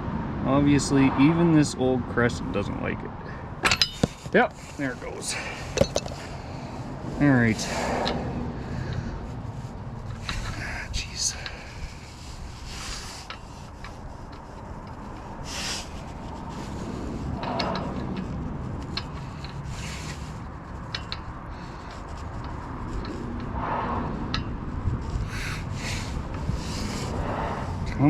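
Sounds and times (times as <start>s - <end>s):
metal rubbing and scraping: 3.6s - 28.0s.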